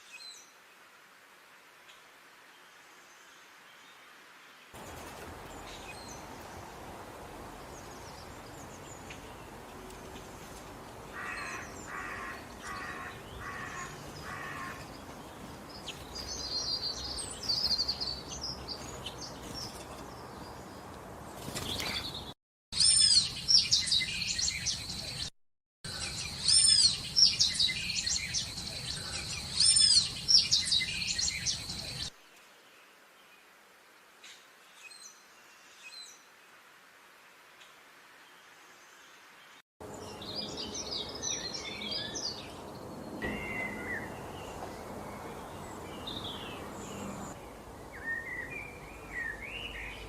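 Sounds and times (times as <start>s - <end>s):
birds chirping: 4.8s - 25.3s, 25.9s - 32.1s, 39.8s - 50.0s.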